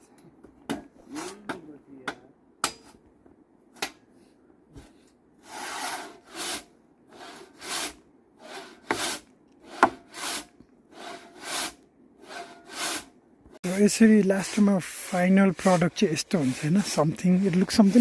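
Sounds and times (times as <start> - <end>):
hand saw cutting wood: 5.4 - 18.0.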